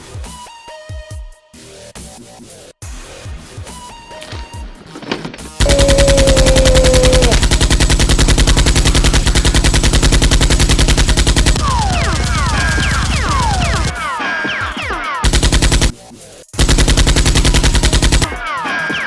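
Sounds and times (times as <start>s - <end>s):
rapid machine-gun fire: 5.6s - 14.1s, 15.2s - 16.0s, 16.6s - 18.4s.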